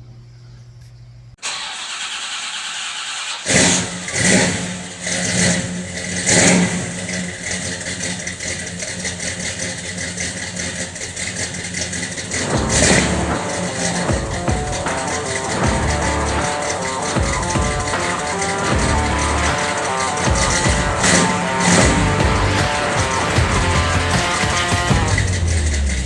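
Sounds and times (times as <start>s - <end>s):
car engine starting and revving: 1.4s - 26.0s.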